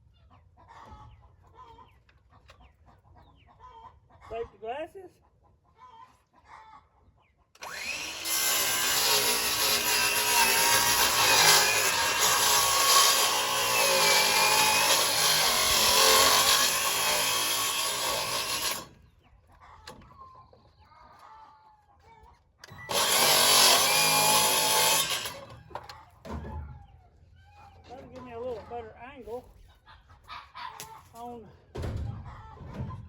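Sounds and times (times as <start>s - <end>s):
power saw cutting wood: 7.6s - 19.0s, 22.6s - 25.8s.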